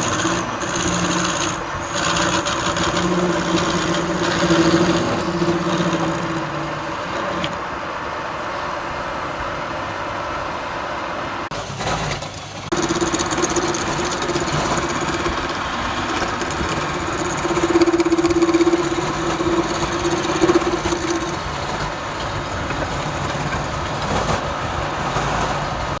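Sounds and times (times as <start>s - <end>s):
tool scraping spinning wood: 0.0s - 7.8s, 11.7s - 22.0s
wood lathe motor hum: 0.0s - 8.0s, 12.7s - 22.0s.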